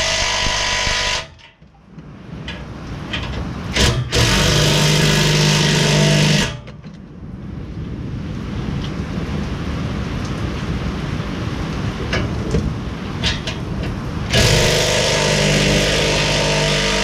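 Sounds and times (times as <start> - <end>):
power tool running: 3.8 - 6.6, 14.3 - 17.0.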